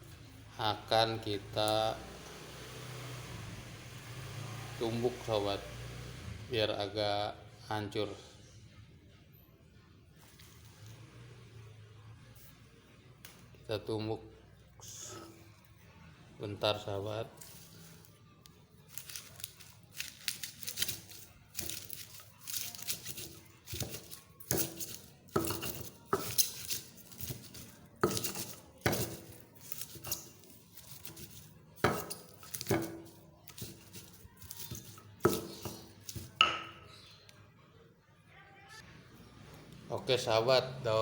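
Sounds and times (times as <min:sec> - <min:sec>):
pestle pounding in mortar: 0:20.0 - 0:36.8.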